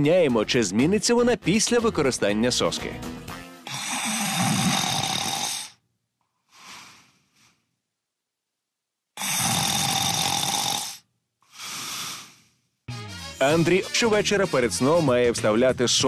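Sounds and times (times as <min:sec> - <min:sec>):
man snoring heavily: 0:03.6 - 0:05.8, 0:06.5 - 0:07.6, 0:09.2 - 0:12.7
quiet breath: 0:05.5 - 0:07.8, 0:10.8 - 0:12.8.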